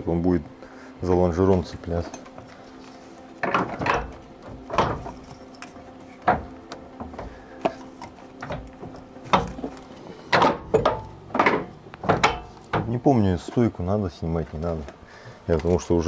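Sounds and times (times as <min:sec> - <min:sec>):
metallic knocks and clunks: 0:03.4 - 0:13.5.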